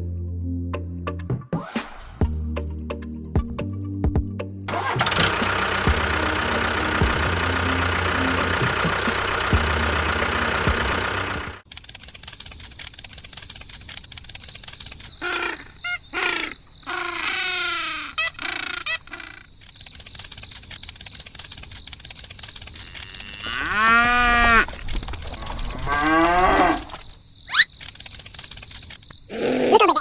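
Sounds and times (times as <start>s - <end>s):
fast steady ticking: 4.7s - 15.2s, 19.6s - 27.0s
cow mooing: 22.8s - 24.7s, 25.4s - 26.9s.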